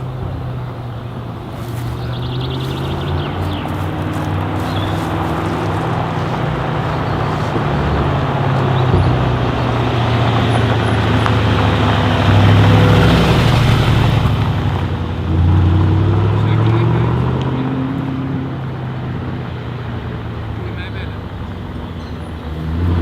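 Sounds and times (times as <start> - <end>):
car engine running: 0.0 - 17.0.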